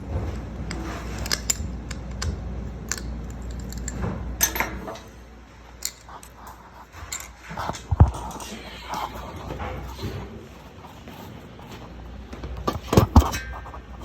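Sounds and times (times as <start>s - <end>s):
small metal parts clinking: 0.7s - 7.7s.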